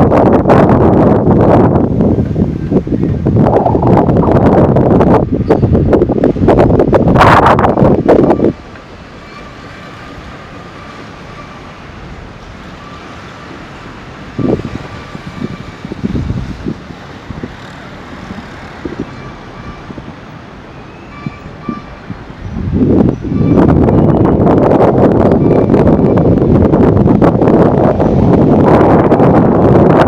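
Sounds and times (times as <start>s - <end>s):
wind buffeting microphone: 0.0s - 30.0s.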